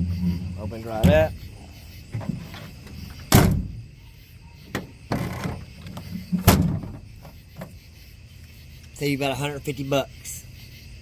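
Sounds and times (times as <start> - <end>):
tailgate clunking: 0.0 - 3.9, 4.6 - 7.8.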